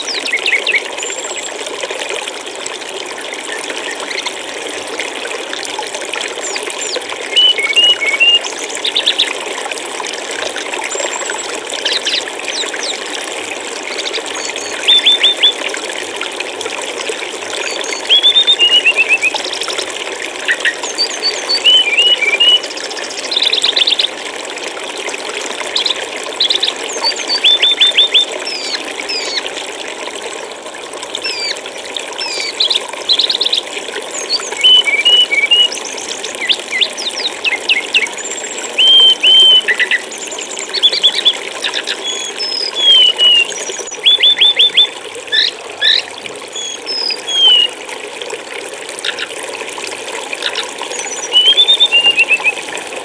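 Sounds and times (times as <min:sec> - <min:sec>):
flowing water: 0:00.0 - 0:53.0
songbird chirping: 0:38.7 - 0:47.7, 0:51.2 - 0:52.5.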